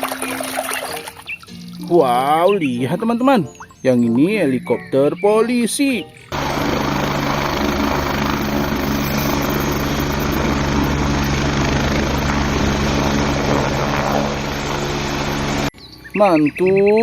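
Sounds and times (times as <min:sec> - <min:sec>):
helicopter engine hum: 0:06.3 - 0:15.7
helicopter rotor chop: 0:06.3 - 0:15.7.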